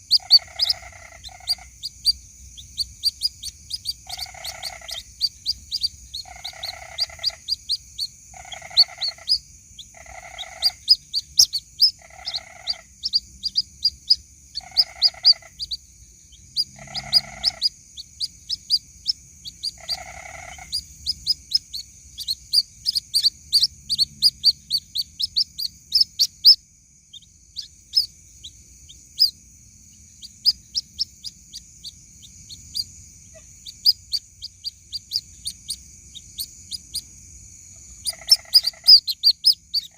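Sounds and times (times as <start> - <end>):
high-pitched chick peeps: 0.0 - 29.4, 30.2 - 37.1, 37.8 - 39.9
steady high-pitched hiss: 0.0 - 39.9
lower rasping bird call: 16.5 - 18.7.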